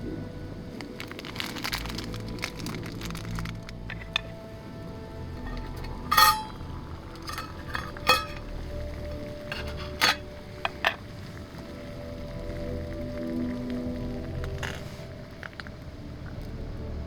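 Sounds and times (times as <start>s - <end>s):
quiet background music: 0.0s - 17.0s
metal cookware clinking: 5.4s - 11.0s.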